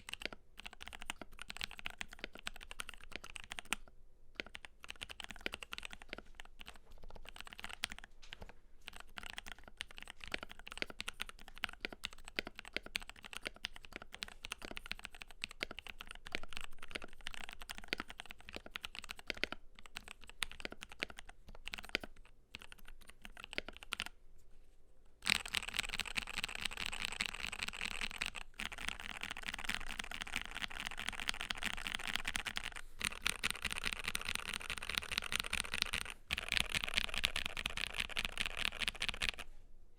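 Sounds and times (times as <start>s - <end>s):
fast typing on mechanical keyboard: 0.0s - 3.8s, 4.4s - 24.2s, 25.2s - 39.5s.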